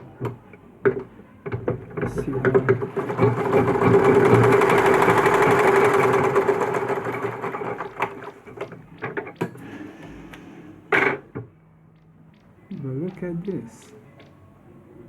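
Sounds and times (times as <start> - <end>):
sewing machine stitching: 1.6 - 8.8.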